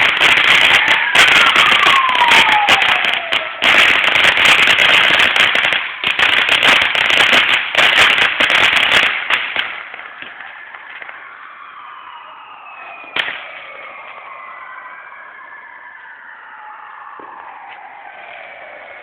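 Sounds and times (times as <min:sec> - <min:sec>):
firecrackers crackling: 0:00.0 - 0:14.3
falling firework whistle: 0:00.0 - 0:14.8.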